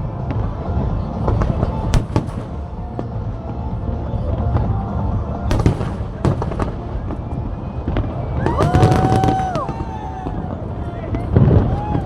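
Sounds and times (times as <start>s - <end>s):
low rumble of fireworks: 0.0s - 12.0s
music: 0.0s - 12.0s
sharp firework bangs: 1.9s - 2.9s, 5.5s - 7.2s.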